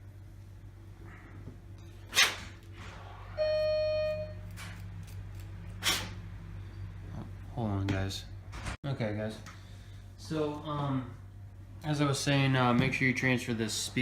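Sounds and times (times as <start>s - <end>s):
steady pitched tone: 2.8s - 4.6s.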